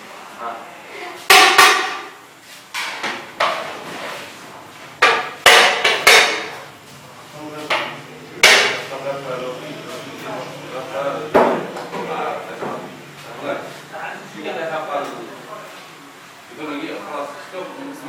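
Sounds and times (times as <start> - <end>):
cleaver chopping on a board: 5.0 - 6.5.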